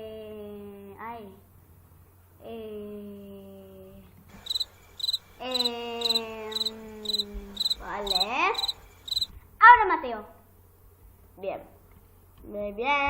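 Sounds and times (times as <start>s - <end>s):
cricket chirping: 4.3s - 9.3s.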